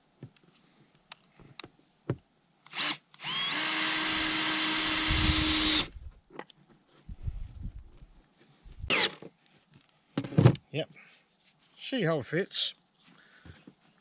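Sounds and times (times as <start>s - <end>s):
cordless drill spinning: 2.7s - 6.1s, 8.8s - 9.2s.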